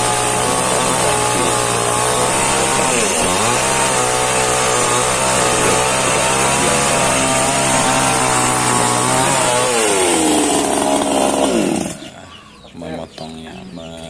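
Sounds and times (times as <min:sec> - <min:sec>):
chainsaw engine revving: 0:00.0 - 0:12.5.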